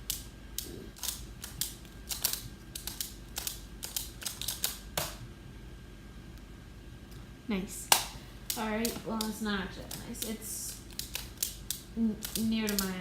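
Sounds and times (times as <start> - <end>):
plastic puzzle clicking: 0.0 - 5.1, 8.5 - 13.0.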